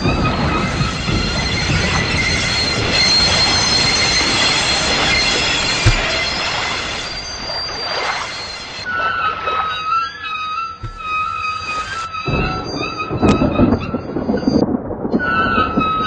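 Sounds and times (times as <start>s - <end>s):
harsh metallic screech: 0.0s - 14.6s
short low thud: 5.1s - 7.5s, 10.8s - 13.7s.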